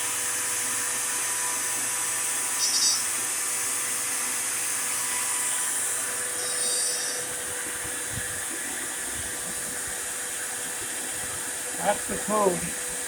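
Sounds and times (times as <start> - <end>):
router spindle cutting wood: 0.0 - 9.9
dust vacuum hissing: 0.0 - 13.0.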